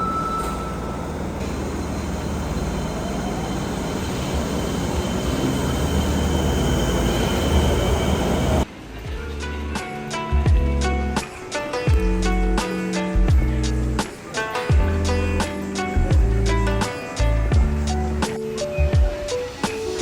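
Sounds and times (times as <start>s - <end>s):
train rumbling: 0.0s - 9.5s.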